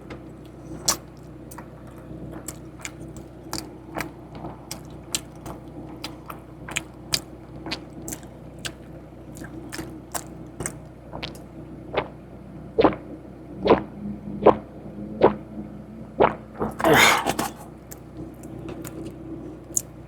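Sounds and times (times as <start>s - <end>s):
crunchy chewing: 0.2s - 12.1s, 16.2s - 20.0s
low hum: 11.9s - 17.7s.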